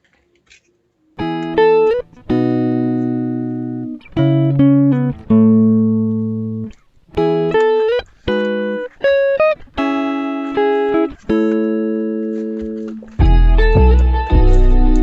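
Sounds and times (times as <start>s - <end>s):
plucked guitar music: 1.2s - 15.0s.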